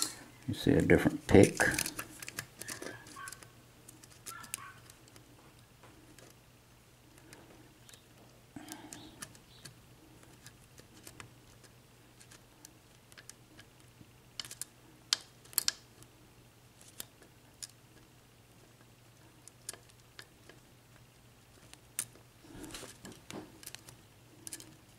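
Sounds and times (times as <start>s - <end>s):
lock pick clicking and scraping: 21.6s - 24.8s.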